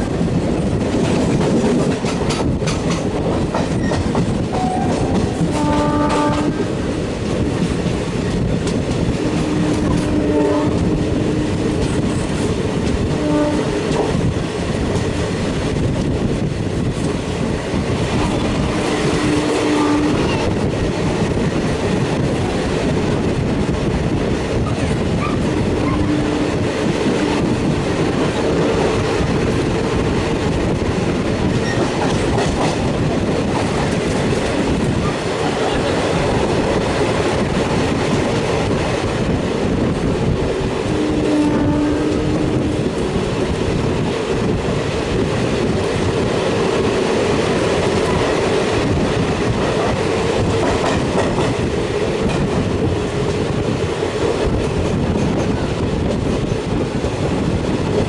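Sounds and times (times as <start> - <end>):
train wheels clacking: 0.0 - 17.4, 24.5 - 57.4
train horn: 4.5 - 6.8, 9.1 - 11.9, 13.0 - 14.0, 18.7 - 20.5, 25.2 - 27.5, 40.8 - 42.8.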